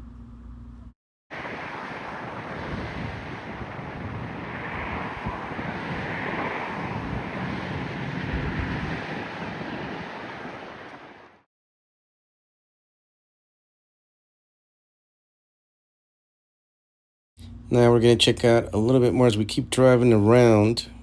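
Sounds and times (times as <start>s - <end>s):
low rumble: 0.8s - 11.2s
wind buffeting microphone: 1.3s - 11.4s
wind and road noise: 1.3s - 11.5s.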